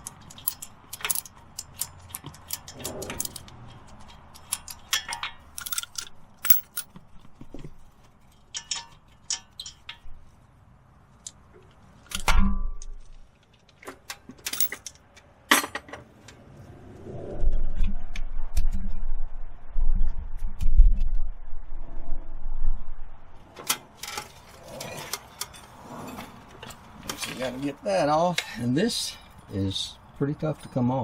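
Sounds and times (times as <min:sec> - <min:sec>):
metal tools clinking: 0:00.0 - 0:07.0, 0:14.4 - 0:14.9
low rumbling handling noise: 0:05.4 - 0:08.3.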